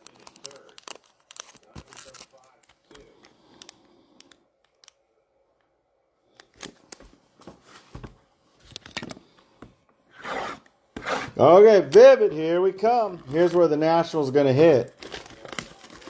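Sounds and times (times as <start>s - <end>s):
wrapper rustling: 0.0s - 2.9s, 12.6s - 16.0s.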